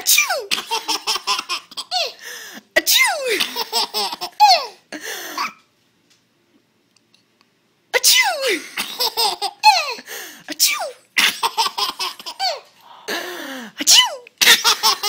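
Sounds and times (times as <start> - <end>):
baby laughing and squealing: 9.0 - 10.0, 11.3 - 12.7.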